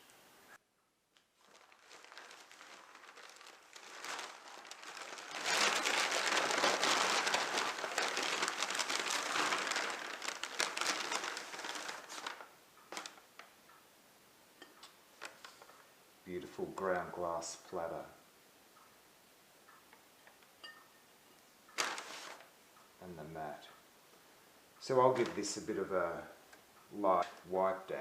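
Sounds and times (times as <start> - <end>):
packing wrapping crinkling: 1.1 - 13.5, 21.7 - 22.5, 24.8 - 25.8.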